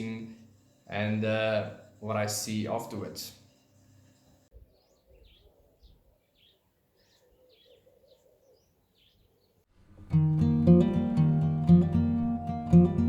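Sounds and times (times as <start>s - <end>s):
faint birds chirping: 0.0s - 10.2s
strummed acoustic guitar music: 9.8s - 13.0s.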